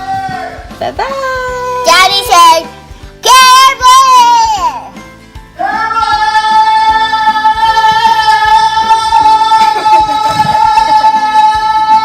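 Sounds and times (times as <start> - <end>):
backing track with low hits: 5.0 - 12.0.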